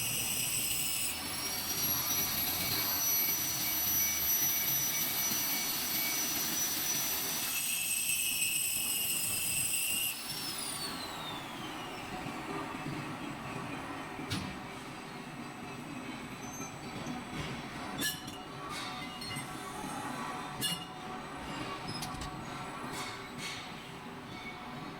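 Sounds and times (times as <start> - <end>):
grinder whining and spinning down: 0.0 - 12.4.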